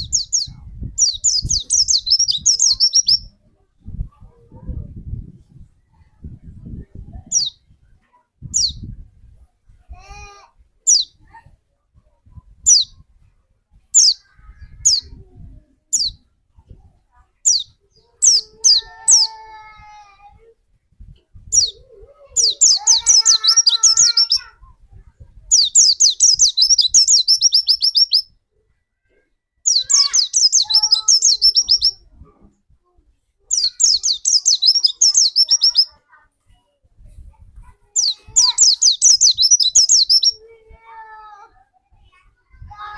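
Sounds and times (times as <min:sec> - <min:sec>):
songbird chirping: 0:00.0 - 0:03.6, 0:17.4 - 0:19.6, 0:21.5 - 0:24.5, 0:25.5 - 0:32.5, 0:33.5 - 0:36.0, 0:38.0 - 0:40.5.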